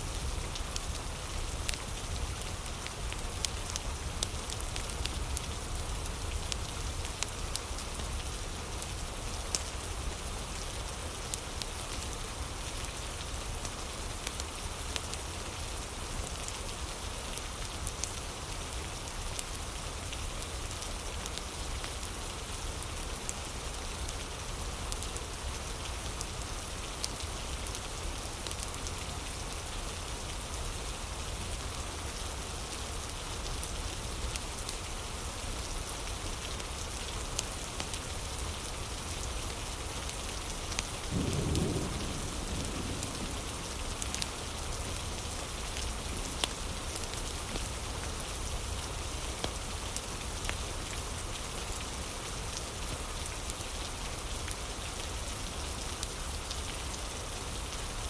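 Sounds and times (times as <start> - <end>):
steady rain falling: 0.0 - 58.0
low rumble of thunder: 41.1 - 45.2.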